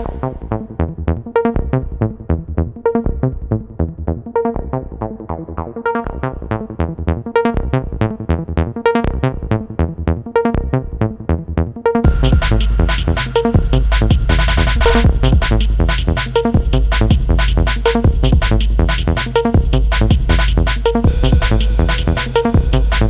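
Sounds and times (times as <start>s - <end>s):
plucked synthesizer notes: 11.9s - 23.0s
low bass pulse: 12.1s - 23.0s.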